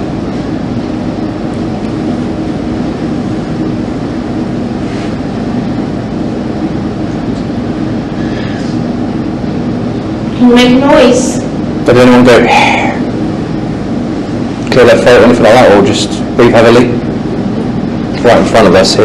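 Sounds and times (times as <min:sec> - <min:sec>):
low droning hum: 0:00.0 - 0:19.0.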